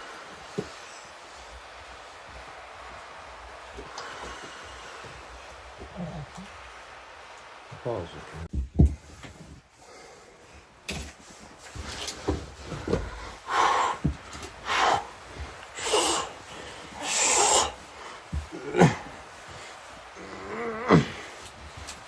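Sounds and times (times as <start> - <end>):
person breathing hard: 3.8 - 5.5, 9.7 - 21.9
forceful snort-like exhales: 15.8 - 17.9.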